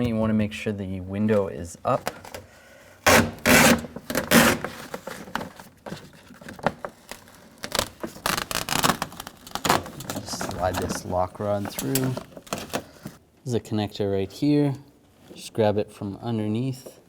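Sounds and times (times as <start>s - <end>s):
plastic sheet scraping: 3.1s - 13.2s.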